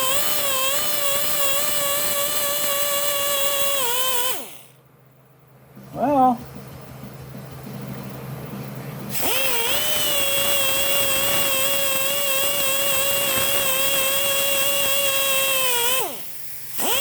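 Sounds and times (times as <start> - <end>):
electric power tool whining: 0.0 - 4.7, 9.1 - 17.0.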